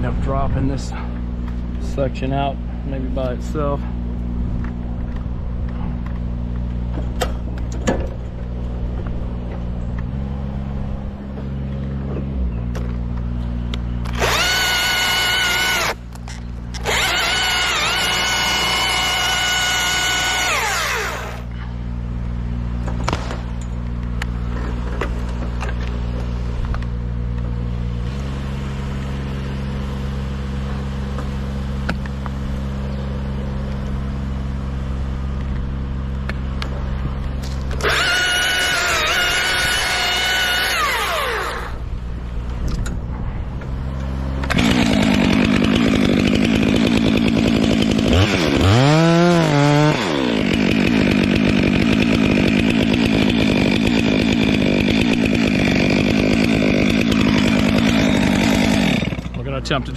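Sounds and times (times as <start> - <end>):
high-pitched power tool: 14.0 - 16.0, 16.8 - 21.5, 37.8 - 41.8.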